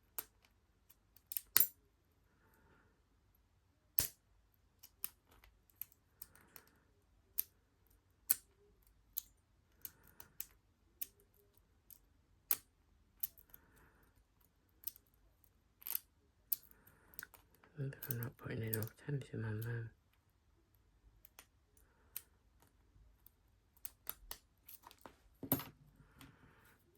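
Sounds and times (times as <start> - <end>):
lock pick clicking padlock pins: 0.1 - 1.8, 3.9 - 4.2, 4.8 - 6.7, 7.3 - 13.6, 14.7 - 15.2, 15.8 - 19.0, 21.2 - 25.7.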